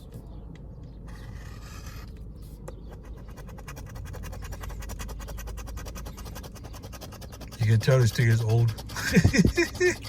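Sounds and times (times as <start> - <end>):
lottery ticket being scratched: 2.9 - 10.0.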